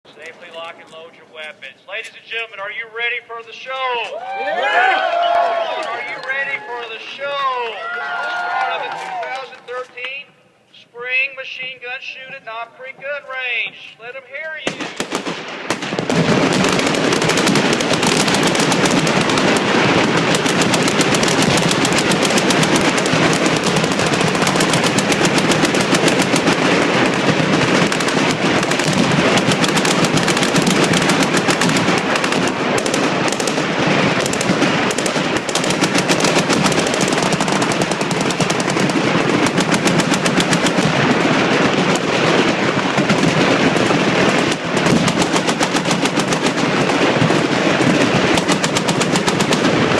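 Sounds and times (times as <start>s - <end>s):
machine guns firing: 14.6s - 49.9s.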